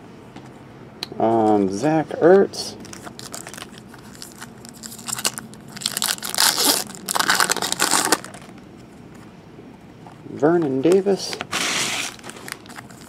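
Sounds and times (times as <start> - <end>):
plastic wrapper crinkling: 2.8 - 8.6, 11.6 - 13.0.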